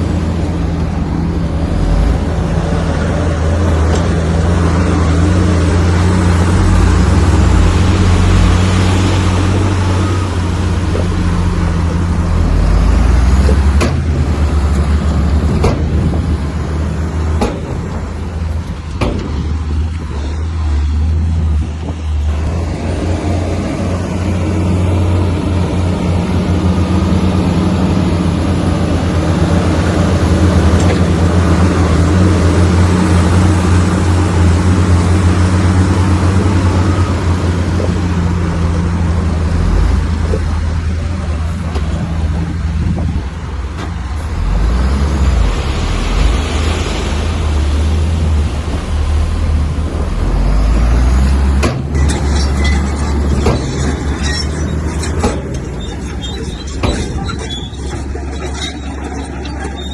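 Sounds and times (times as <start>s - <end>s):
heavy diesel engine under load: 0.0s - 59.9s
sharp knocks: 17.3s - 18.1s, 18.9s - 19.7s.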